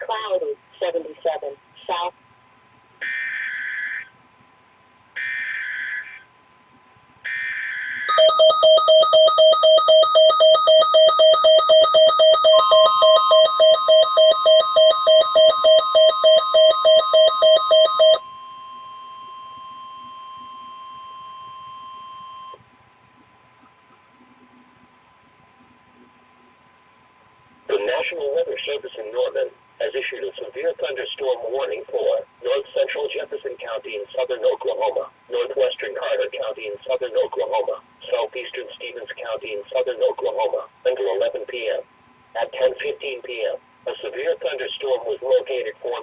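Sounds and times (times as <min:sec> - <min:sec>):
steady single tone: 0:18.2 - 0:22.6.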